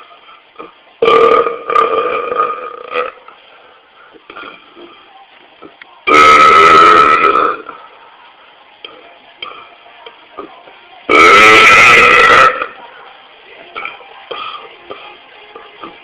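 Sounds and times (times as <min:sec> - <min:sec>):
man belching loudly: 0:01.0 - 0:03.2, 0:06.1 - 0:07.7, 0:11.1 - 0:12.8.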